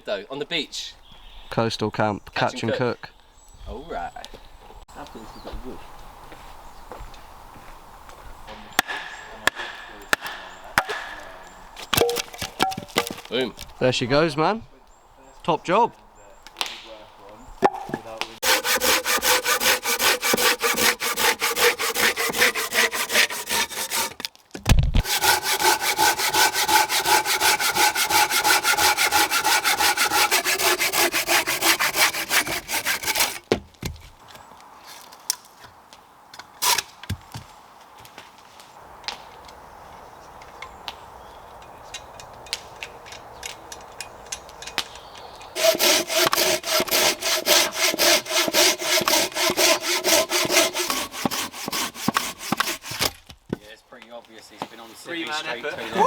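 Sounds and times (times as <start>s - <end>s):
hand saw cutting wood: 8.7s - 13.3s, 18.4s - 24.3s, 25.0s - 33.6s, 45.6s - 53.2s.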